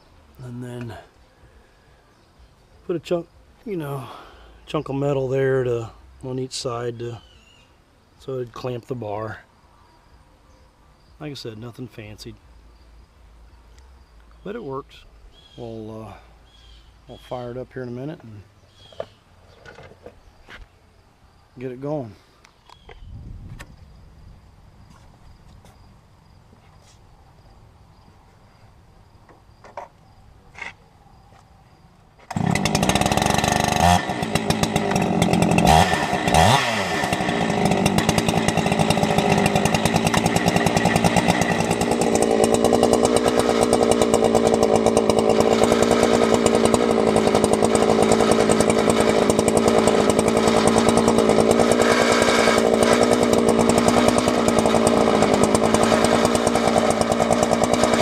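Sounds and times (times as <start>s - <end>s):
chainsaw revving: 3.7s - 6.0s, 32.2s - 58.0s.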